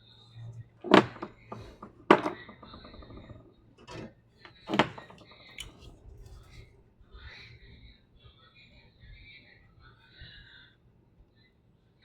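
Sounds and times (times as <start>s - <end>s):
hard objects knocking on work surface: 0.8s - 5.8s
light clicks and rattle: 0.8s - 6.6s.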